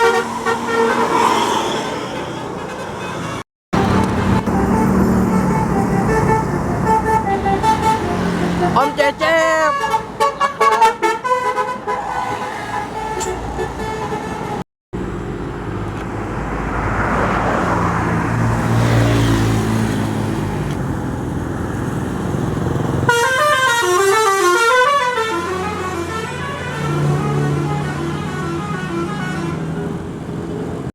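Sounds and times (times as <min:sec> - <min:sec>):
bus engine passing: 0:00.0 - 0:10.6, 0:11.6 - 0:30.9
multi-tone bus horn tune: 0:00.0 - 0:14.6, 0:23.0 - 0:30.2.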